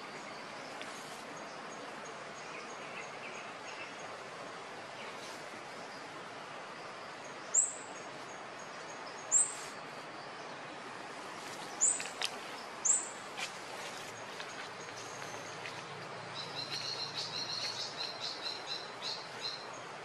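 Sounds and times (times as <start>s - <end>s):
outdoor background hiss: 0.0s - 20.0s
bird chirping: 11.6s - 19.9s.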